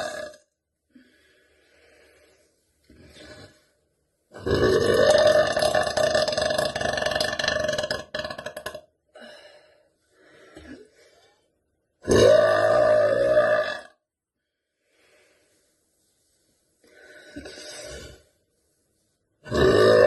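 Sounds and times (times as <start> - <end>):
woman burping loudly: 0.0 - 0.4, 4.4 - 8.9, 12.0 - 14.0, 19.5 - 20.0.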